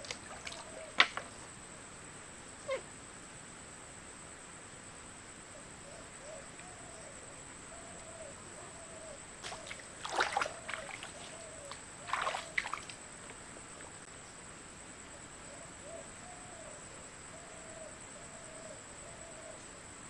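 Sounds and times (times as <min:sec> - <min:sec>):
water splashing: 0:00.0 - 0:01.2, 0:09.4 - 0:13.0.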